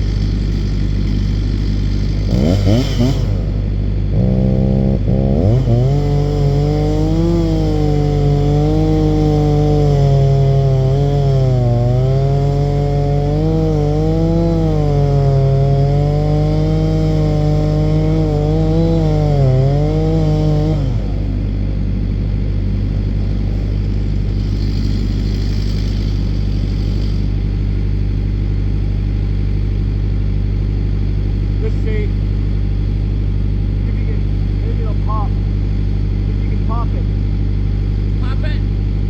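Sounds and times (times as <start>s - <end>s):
chainsaw cutting at high revs: 0.0s - 29.8s
low engine hum: 0.0s - 39.0s.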